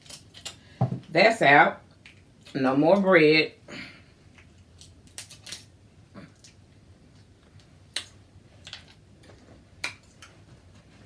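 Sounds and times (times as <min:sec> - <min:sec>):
eating clicks and smacks: 0:07.2 - 0:09.0, 0:09.8 - 0:10.4.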